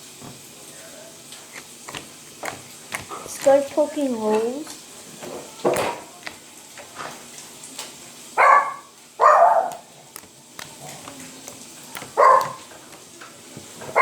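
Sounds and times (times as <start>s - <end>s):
dog barking: 8.4s - 9.8s, 12.1s - 12.7s.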